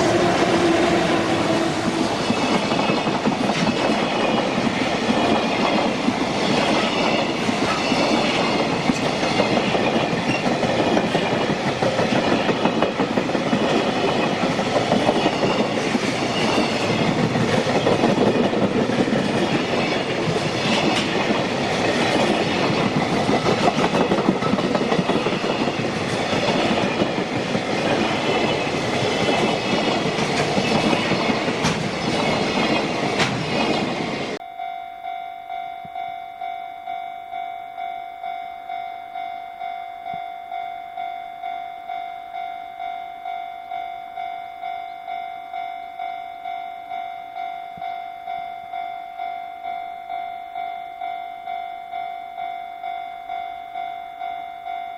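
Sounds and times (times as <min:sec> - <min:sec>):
train wagons rolling past: 0:00.0 - 0:34.4.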